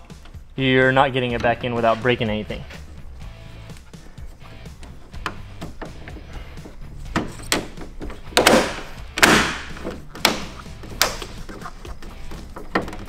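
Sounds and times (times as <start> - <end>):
plastic grilles snapping into place: 7.1 - 11.6.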